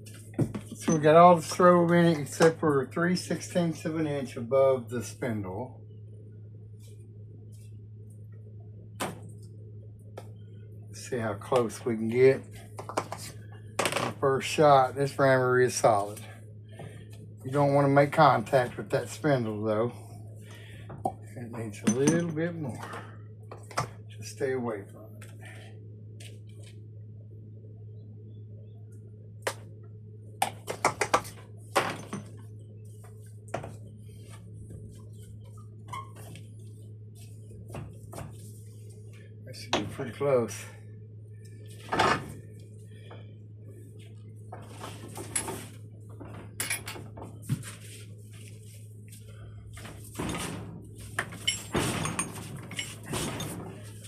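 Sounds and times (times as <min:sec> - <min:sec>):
steady low hum: 0:00.0 - 0:54.0
hard tools clinking and tapping: 0:21.8 - 0:23.9, 0:30.4 - 0:32.4, 0:45.1 - 0:47.3, 0:51.2 - 0:53.7.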